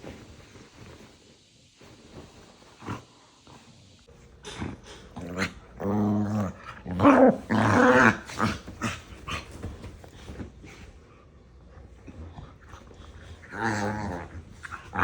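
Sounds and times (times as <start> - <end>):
small dogs growling and yapping: 4.4 - 10.3, 12.2 - 15.0.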